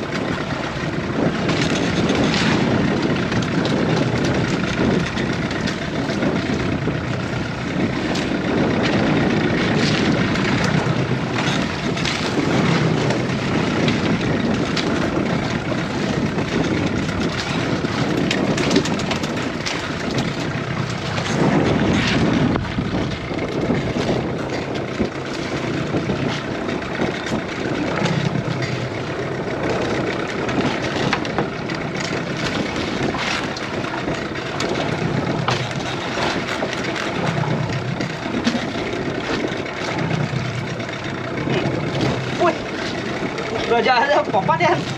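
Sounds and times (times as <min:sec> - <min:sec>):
boat engine running: 0:00.0 - 0:44.9
rushing water: 0:03.3 - 0:44.9.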